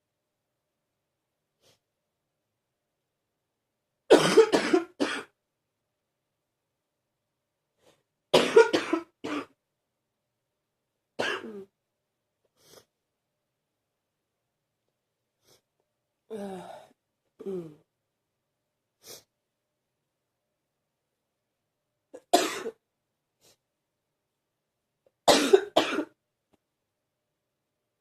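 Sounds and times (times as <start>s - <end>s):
person coughing deeply: 4.1s - 5.4s, 8.4s - 9.6s, 11.2s - 11.7s, 22.2s - 22.8s, 25.3s - 26.2s.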